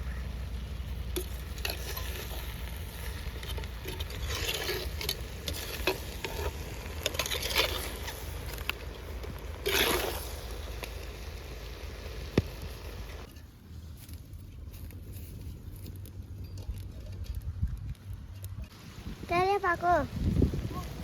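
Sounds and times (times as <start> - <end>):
intestines sizzling in a pot: 0.2 - 13.3
ladle scraping a pot: 1.2 - 10.8.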